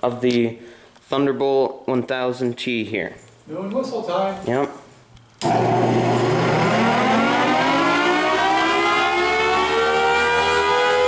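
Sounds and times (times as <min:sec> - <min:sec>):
warning siren wail rising: 0:05.9 - 0:11.0.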